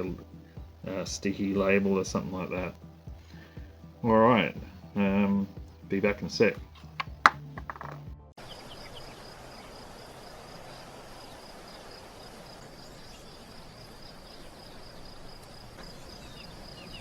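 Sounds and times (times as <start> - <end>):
insect chirping: 8.4 - 17.0.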